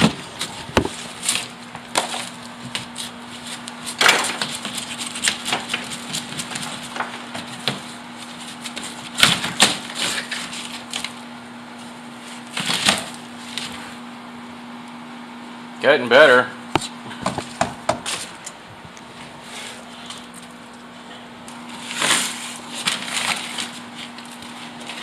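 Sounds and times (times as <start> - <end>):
wall material crunching and cracking: 0.0 - 13.8, 21.5 - 25.0
steady low hum: 0.0 - 25.0.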